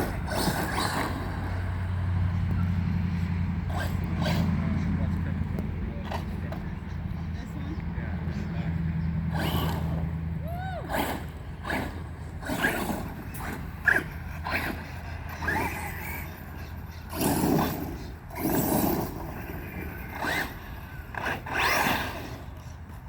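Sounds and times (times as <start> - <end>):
electric toy truck motor whining: 0.0 - 4.5, 9.3 - 23.0.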